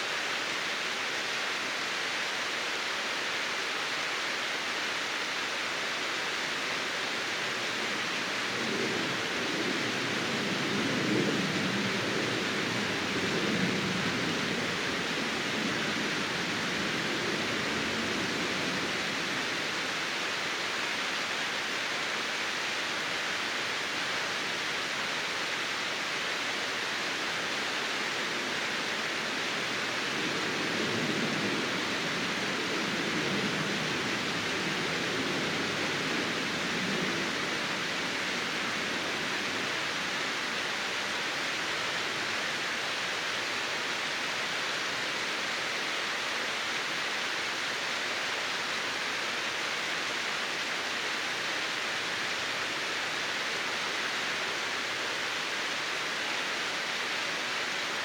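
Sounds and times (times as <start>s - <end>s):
waterfall rushing: 33.4s - 58.0s.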